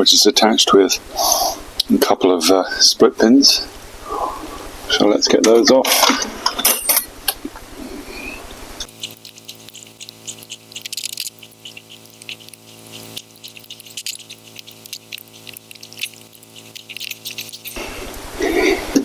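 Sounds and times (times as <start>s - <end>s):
sustained background tones: 8.1s - 19.0s
metal tools clicking and scraping: 8.8s - 18.2s.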